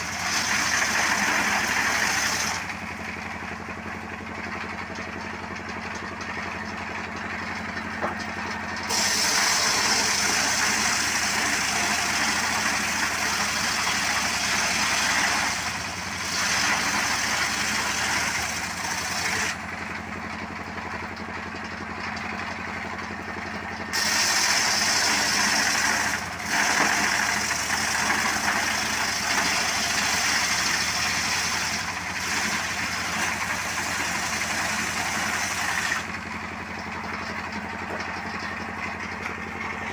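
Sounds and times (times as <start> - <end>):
saw blade cutting wood: 0.0 - 3.2, 8.8 - 19.7, 23.9 - 36.2.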